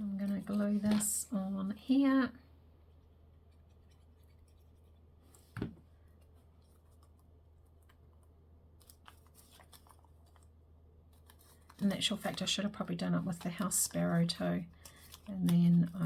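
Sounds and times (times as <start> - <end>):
low steady hum: 0.0 - 16.0
paper handling clicks and scratches: 6.2 - 10.5, 11.1 - 16.0.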